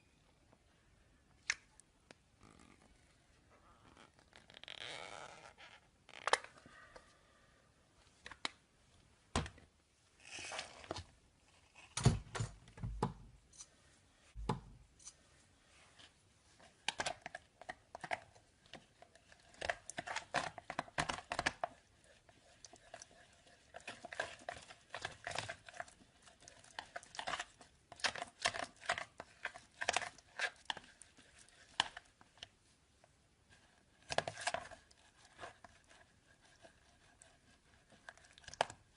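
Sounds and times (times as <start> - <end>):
soft slime squelches: 13.3 - 38.9.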